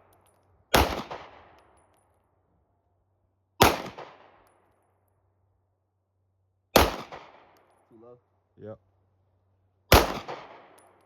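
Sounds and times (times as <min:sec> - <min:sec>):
pistol shots with echo: 0:00.7 - 0:01.6, 0:03.6 - 0:04.5, 0:06.7 - 0:07.6, 0:09.9 - 0:11.0.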